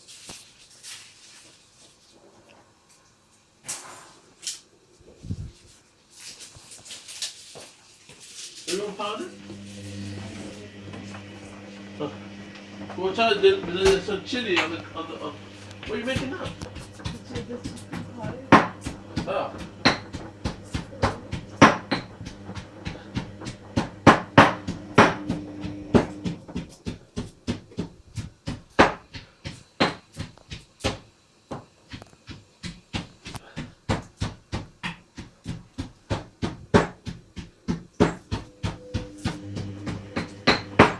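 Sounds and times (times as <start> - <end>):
washing machine motor hum: 8.7 - 40.9
laundry knocking against drum: 12.1 - 30.6, 32.6 - 40.9.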